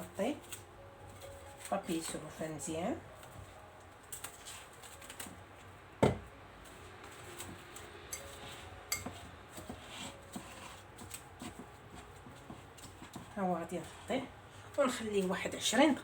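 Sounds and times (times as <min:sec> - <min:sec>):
knock on bowl: 0:06.0 - 0:06.2
bowl clinking: 0:08.1 - 0:09.3.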